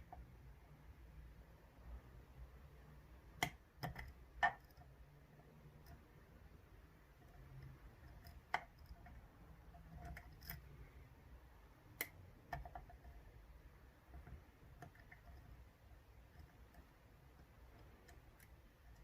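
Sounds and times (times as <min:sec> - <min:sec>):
lock pick clicks and taps: 0:03.4 - 0:04.8, 0:07.6 - 0:09.2, 0:12.0 - 0:13.0.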